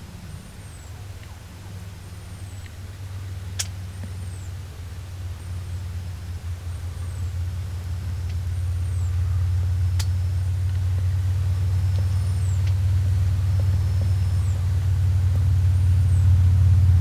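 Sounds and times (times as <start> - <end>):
vehicle engine rumble: 0.0 - 17.0
bird chirping: 8.2 - 15.0.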